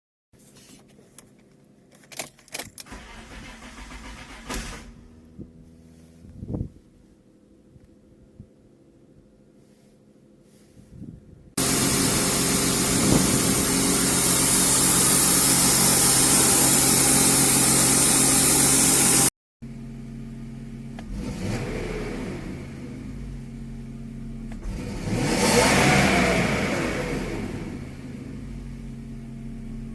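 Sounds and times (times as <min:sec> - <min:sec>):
engine cranking by starter: 0:02.0 - 0:05.2
quieter engine sound: 0:03.7 - 0:24.7.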